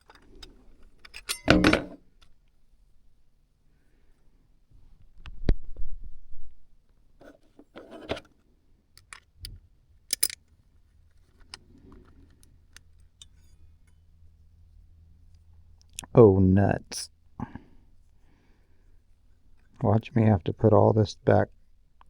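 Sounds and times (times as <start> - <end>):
small metal parts clinking: 0.0 - 2.0, 10.1 - 10.4.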